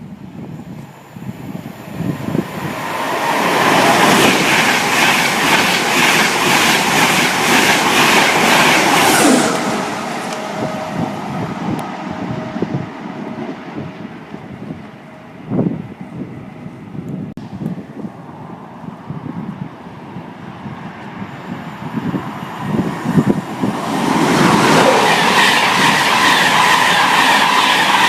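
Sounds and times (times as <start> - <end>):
train wheels clattering over rail joints: 3.6 - 9.4.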